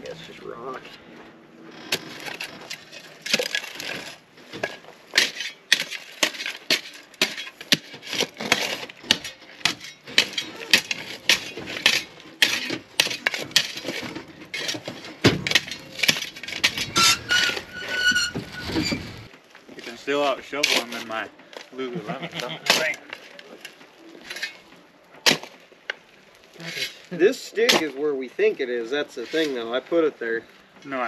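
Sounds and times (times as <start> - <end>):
shovels scraping stony soil: 1.9 - 19.3, 29.2 - 29.8.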